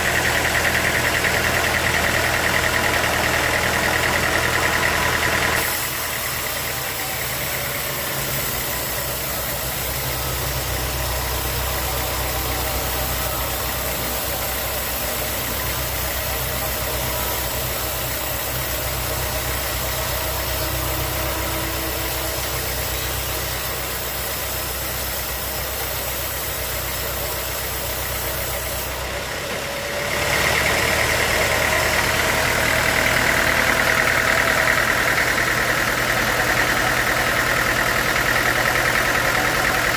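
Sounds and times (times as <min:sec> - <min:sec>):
high-pitched whine: 0:00.0 - 0:29.4
sawmill engine running: 0:00.0 - 0:39.9.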